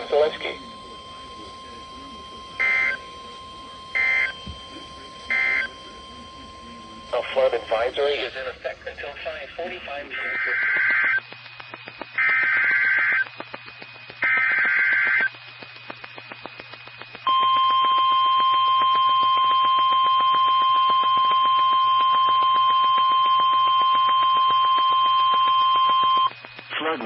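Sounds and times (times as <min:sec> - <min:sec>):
steady warning alarm tone: 0:00.0 - 0:11.2, 0:17.3 - 0:26.3
warbling digital header tones: 0:00.0 - 0:11.2
radio static crackling: 0:00.0 - 0:27.0.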